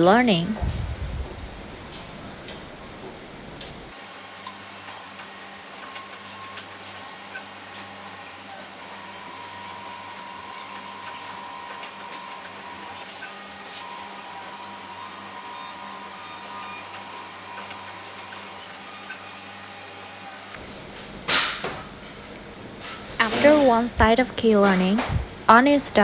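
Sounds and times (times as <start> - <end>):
stepper motors whining: 3.9 - 20.6.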